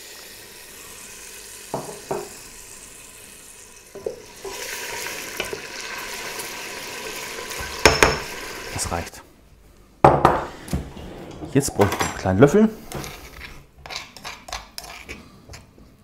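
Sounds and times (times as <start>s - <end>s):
sizzling in a pot: 0.0s - 9.2s
spoon knocking against pot: 7.8s - 8.3s.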